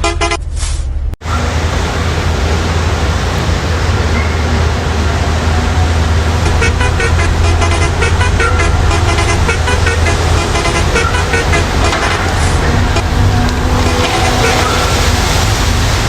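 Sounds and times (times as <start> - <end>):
toy horn toots: 0.0 - 0.4, 6.4 - 15.1
low engine hum: 0.8 - 16.0.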